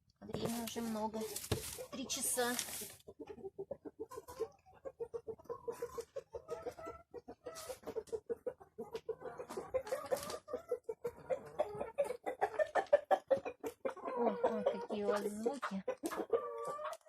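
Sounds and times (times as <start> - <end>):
hens clucking: 0.2 - 17.0
rustling: 0.3 - 3.0.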